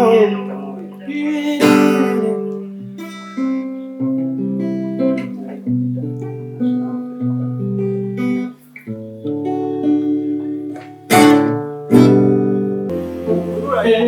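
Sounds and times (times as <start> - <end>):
person singing: 0.0 - 3.1
acoustic guitar playing: 0.0 - 14.0.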